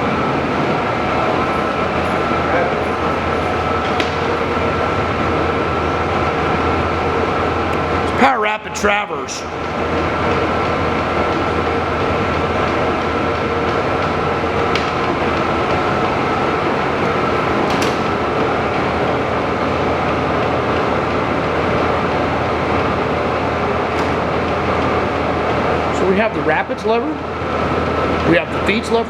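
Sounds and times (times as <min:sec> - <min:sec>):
lathe whirring with thin whine: 0:00.0 - 0:29.0.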